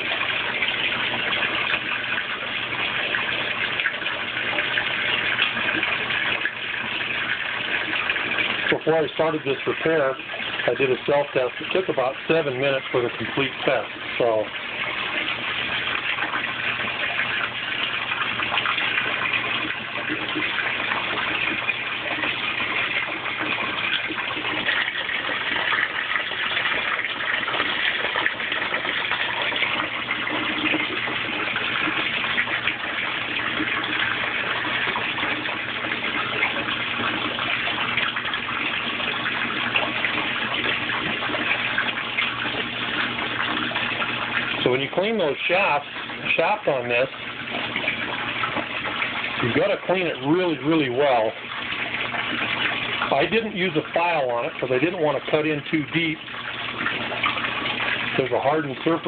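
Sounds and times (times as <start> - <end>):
washing machine low hum: 0.0 - 59.0
water pouring into washing machine: 0.0 - 59.0.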